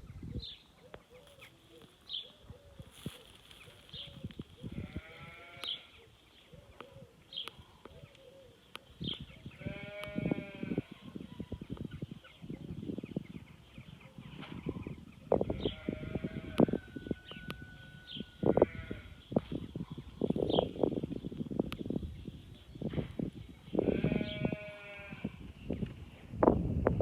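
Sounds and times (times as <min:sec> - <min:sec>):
wind rumbling on microphone: 0:00.0 - 0:27.0
animal bleating: 0:04.7 - 0:05.9, 0:09.6 - 0:11.0, 0:15.5 - 0:16.8, 0:18.4 - 0:19.2, 0:23.8 - 0:25.4.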